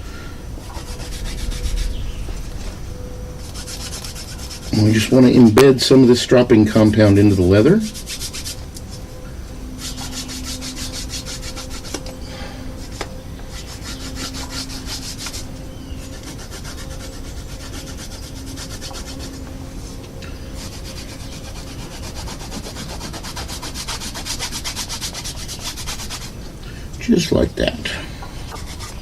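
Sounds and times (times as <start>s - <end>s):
compound scrubbing on leather strop: 6.6s - 9.0s, 9.8s - 12.2s, 12.8s - 19.6s, 20.6s - 26.4s.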